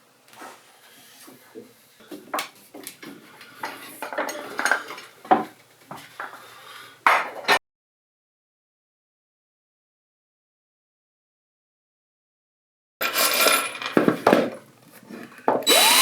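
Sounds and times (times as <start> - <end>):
metal clamps clinking and knocking: 13.0 - 14.6.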